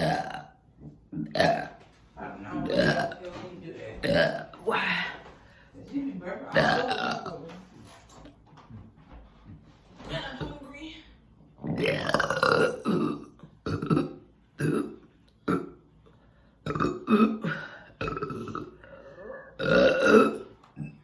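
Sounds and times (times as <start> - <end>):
loud burps: 0.0 - 1.8, 2.5 - 3.4, 4.0 - 4.6, 6.5 - 7.4, 11.6 - 15.8, 16.6 - 21.0.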